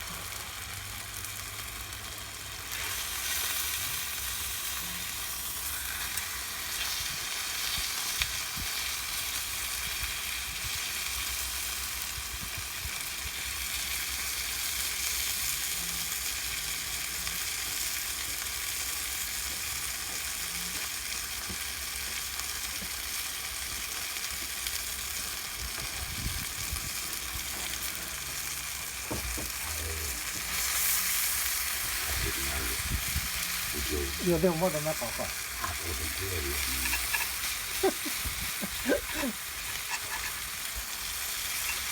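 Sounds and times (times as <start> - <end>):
steak sizzling over fire: 0.0 - 41.9.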